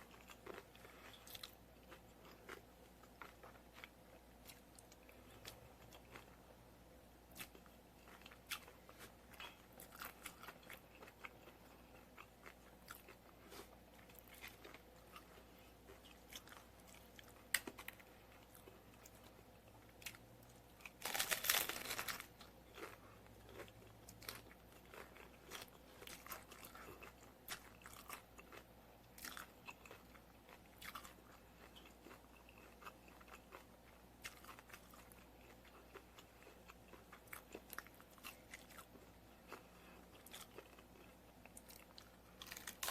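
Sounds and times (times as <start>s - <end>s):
chewing crunchy taco shells: 0.0s - 42.9s
loud crunch of bite: 20.9s - 28.6s.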